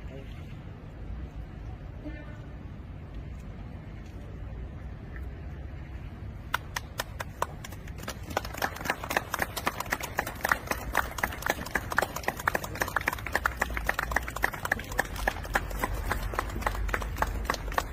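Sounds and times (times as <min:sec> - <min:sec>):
people clapping: 0:06.4 - 0:17.9.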